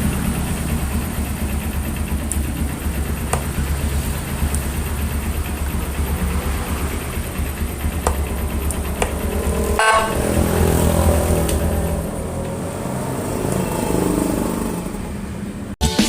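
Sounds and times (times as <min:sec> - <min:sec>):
vehicle engine idling: 0:00.0 - 0:15.8
siren horn blast: 0:09.4 - 0:14.4
siren tone: 0:09.5 - 0:12.5.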